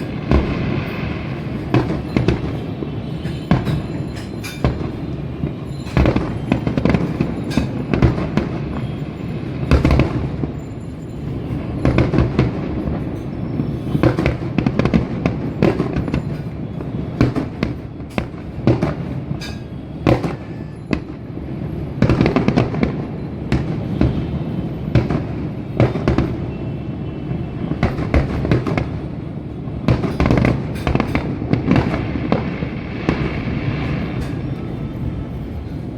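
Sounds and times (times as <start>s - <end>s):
firework bangs: 0.0s - 35.9s
low rumble of explosions: 0.0s - 35.9s.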